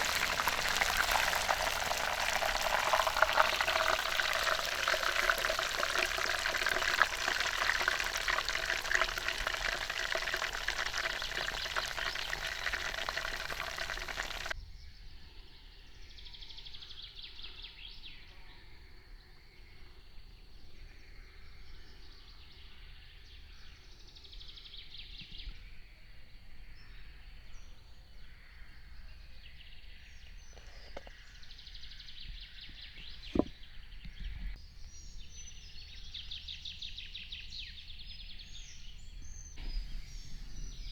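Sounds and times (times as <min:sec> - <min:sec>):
chicken sizzling over a fire: 0:00.0 - 0:14.6, 0:39.6 - 0:40.9.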